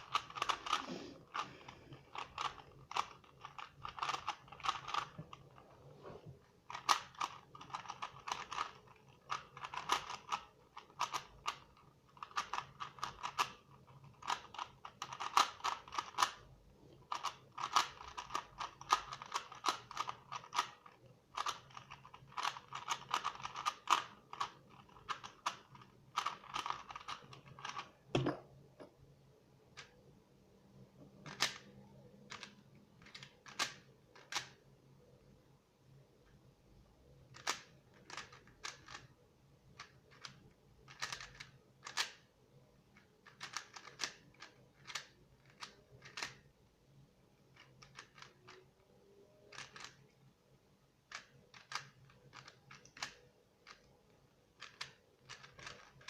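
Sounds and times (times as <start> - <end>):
puzzle cube clicking: 0.0 - 5.7, 6.6 - 28.3, 31.1 - 34.6, 37.3 - 42.3, 42.9 - 46.5, 47.4 - 50.2, 51.0 - 56.0.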